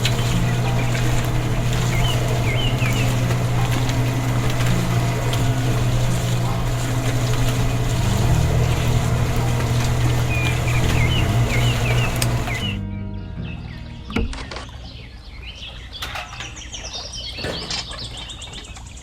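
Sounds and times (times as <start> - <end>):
small motor humming: 0.0 - 12.8.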